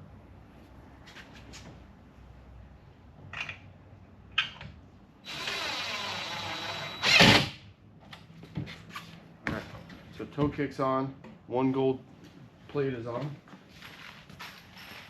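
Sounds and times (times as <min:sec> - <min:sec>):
power drill driving screw into wood: 0:05.2 - 0:07.6.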